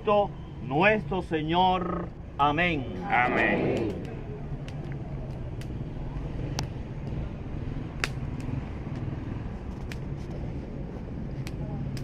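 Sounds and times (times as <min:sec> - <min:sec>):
bonfire crackling: 0:00.0 - 0:12.0
sharp fire pops: 0:03.7 - 0:10.4.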